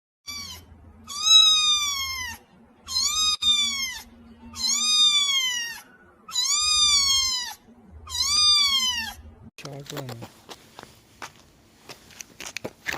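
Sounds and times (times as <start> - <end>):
cat meowing: 0.3 - 9.2.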